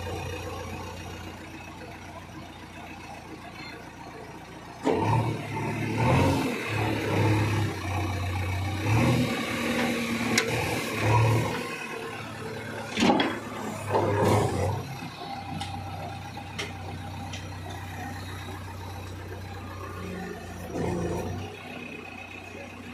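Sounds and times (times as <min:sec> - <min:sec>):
diesel engine revving under load: 0:04.7 - 0:22.9.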